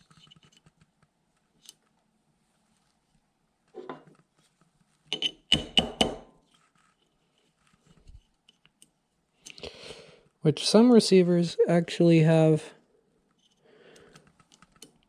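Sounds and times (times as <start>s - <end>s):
faint clicks of metal parts: 0.0s - 2.0s, 6.4s - 9.6s, 13.2s - 15.0s
hammer tapping metal punch: 5.2s - 6.3s.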